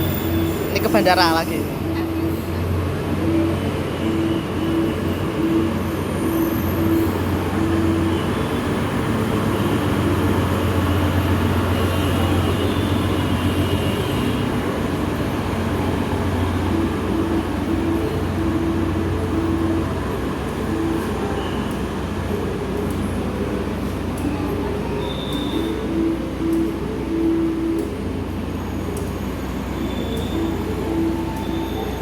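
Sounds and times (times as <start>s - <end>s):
short beeping tone: 0.0s - 9.8s, 24.2s - 29.0s, 29.6s - 32.0s
diesel train engines humming: 0.0s - 32.0s.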